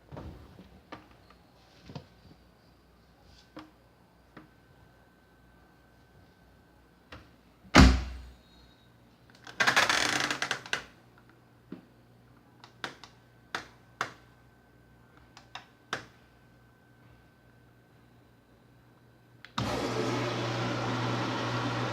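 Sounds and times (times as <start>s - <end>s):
faint steady hum: 10.6s - 19.6s.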